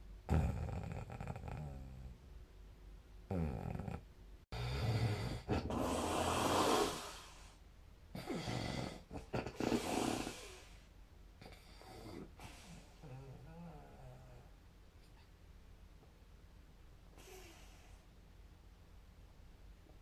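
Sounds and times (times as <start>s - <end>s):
person snoring: 0.3s - 2.1s, 3.3s - 7.6s, 8.2s - 10.8s.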